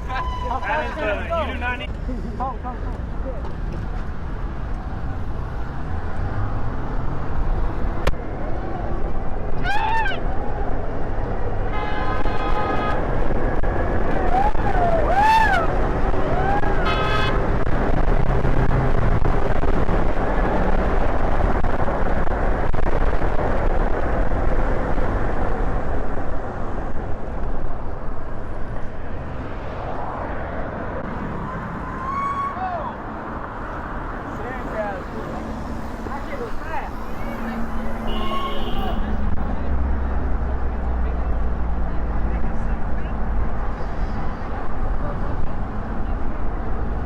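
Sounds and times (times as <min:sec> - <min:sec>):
car horn: 0:00.0 - 0:01.8, 0:11.6 - 0:13.3, 0:16.7 - 0:17.5, 0:34.6 - 0:39.3
honking calls: 0:00.0 - 0:01.9, 0:16.8 - 0:17.4
road traffic: 0:00.0 - 0:47.0.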